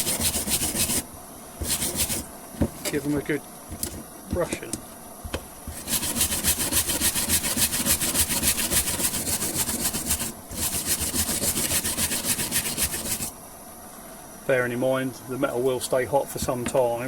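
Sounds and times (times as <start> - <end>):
wire brush scrubbing metal: 0.0 - 1.0, 1.6 - 3.2, 5.7 - 13.3.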